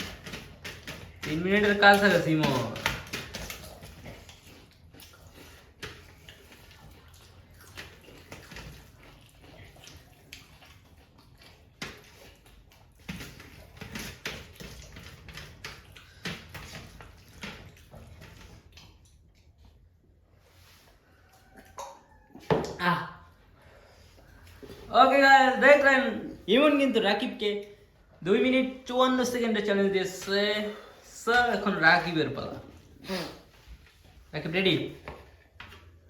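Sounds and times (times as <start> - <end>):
wet chewing sounds: 0.0 - 24.9.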